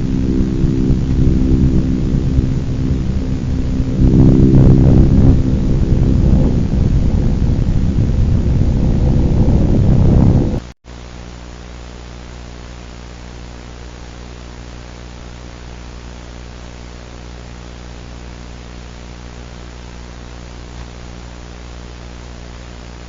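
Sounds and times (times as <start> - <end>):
low electrical buzz: 0.0 - 23.0
static hiss: 0.0 - 23.0.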